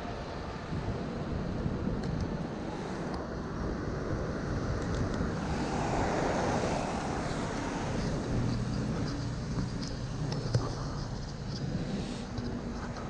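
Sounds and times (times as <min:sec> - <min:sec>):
low engine hum: 0:00.0 - 0:13.0
tyres hissing on wet asphalt: 0:02.5 - 0:11.2, 0:11.8 - 0:13.0.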